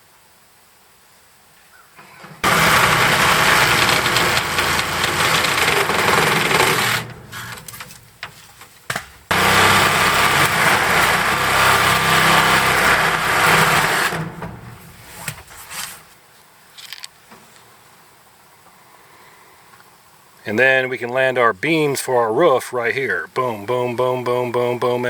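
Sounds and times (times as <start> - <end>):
motorised power tool running: 2.0 - 8.3, 9.3 - 15.4
small knocks: 2.0 - 15.9.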